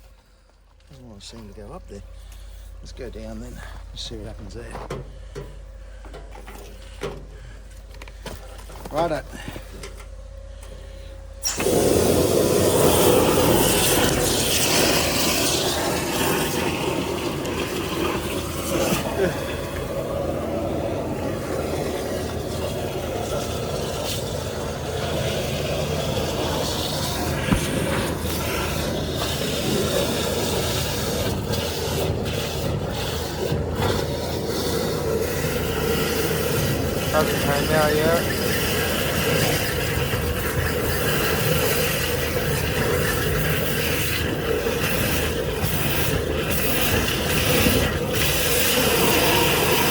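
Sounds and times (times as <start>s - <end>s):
high-pressure pump droning: 0.0s - 49.9s
water jetter rushing: 11.4s - 49.9s.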